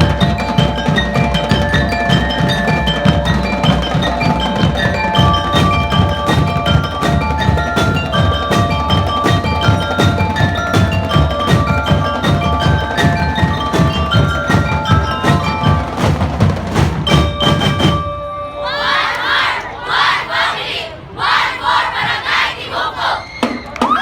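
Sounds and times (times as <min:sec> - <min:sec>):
rapid marching drums: 0:00.0 - 0:18.0
bell lyres playing melody: 0:00.0 - 0:19.5
crowd cheering: 0:18.6 - 0:24.0.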